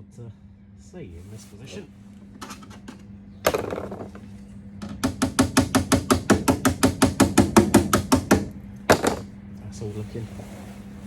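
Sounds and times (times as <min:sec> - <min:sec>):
hammer tapping sheet steel: 0:05.0 - 0:09.3.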